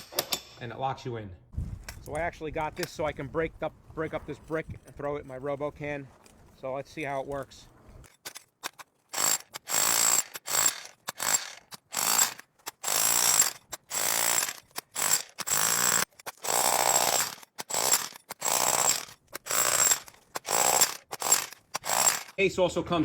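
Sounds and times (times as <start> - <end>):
jackhammer hammering brick: 9.1 - 22.4.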